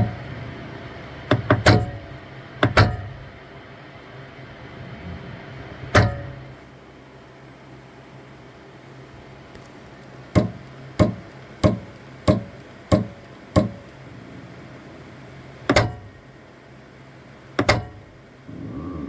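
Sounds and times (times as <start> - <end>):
steady low hum: 0.0 - 19.0
resin printer knocking: 1.2 - 3.3, 10.3 - 14.0, 15.7 - 16.2, 17.6 - 18.2.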